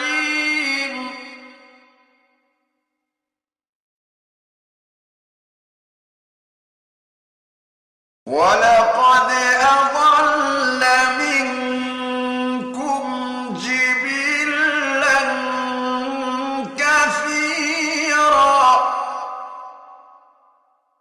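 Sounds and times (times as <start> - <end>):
man chanting: 0.0 - 1.8, 8.3 - 20.3.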